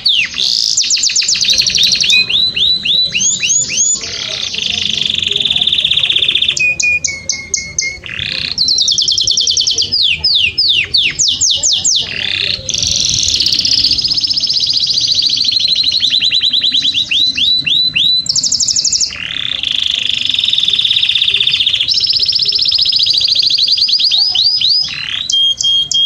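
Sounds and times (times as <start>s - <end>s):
canary singing trills: 0.0s - 26.0s.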